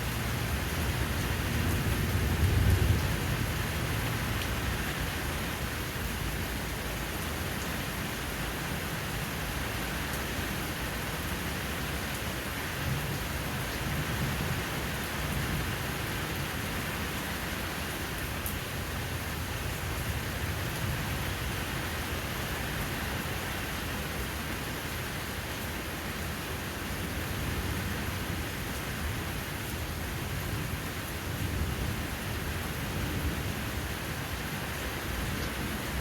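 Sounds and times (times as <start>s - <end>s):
rain falling: 0.0s - 36.0s.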